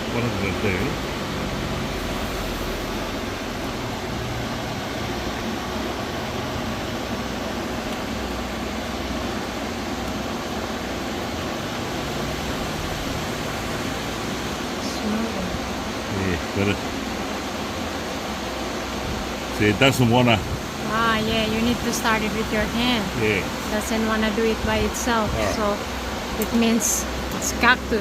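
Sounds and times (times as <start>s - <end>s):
fan motor whirring hum: 0.0s - 28.0s.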